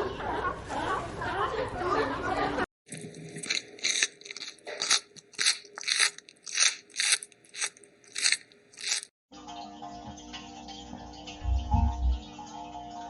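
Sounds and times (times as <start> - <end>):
animal chewing crunchy food: 2.9 - 9.1.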